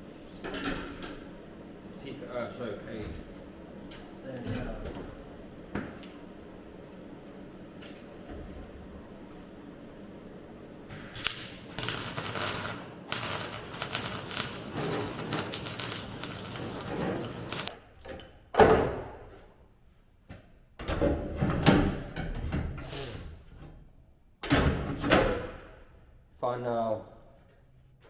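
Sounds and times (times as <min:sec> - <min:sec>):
metal crackling and clattering: 0:11.2 - 0:17.7.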